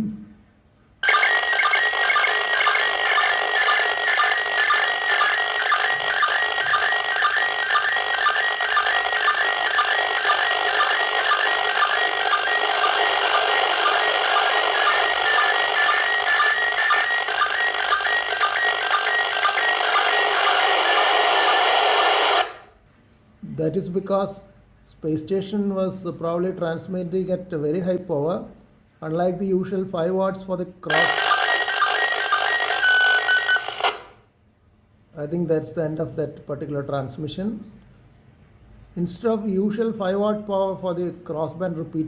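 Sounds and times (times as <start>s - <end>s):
warbling radio signal tones: 1.0s - 22.6s, 30.9s - 34.2s.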